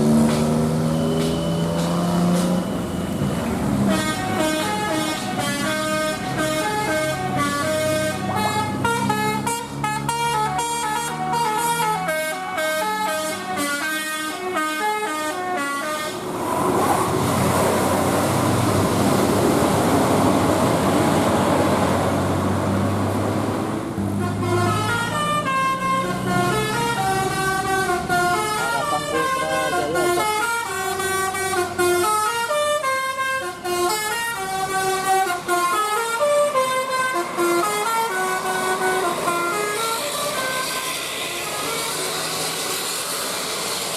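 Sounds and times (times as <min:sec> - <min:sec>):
bus driving by rushing: 0:00.0 - 0:43.9
musical bus horn tune: 0:00.1 - 0:16.3, 0:24.1 - 0:42.7.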